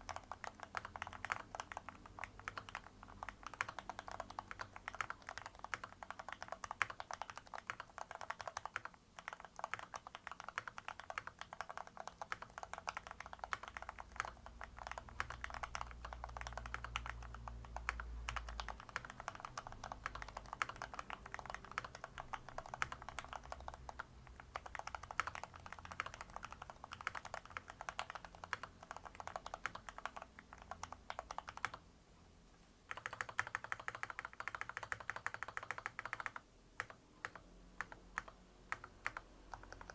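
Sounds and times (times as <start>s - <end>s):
fast mechanical keyboard typing: 0.0s - 31.8s, 32.9s - 39.9s.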